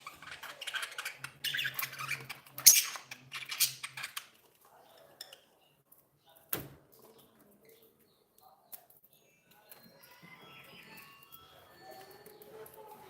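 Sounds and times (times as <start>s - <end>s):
budgerigars chirping and chattering: 0.0s - 5.8s.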